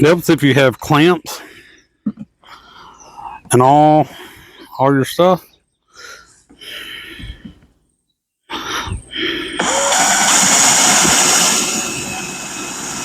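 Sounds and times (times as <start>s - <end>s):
power drill boring into wood: 9.6s - 13.0s.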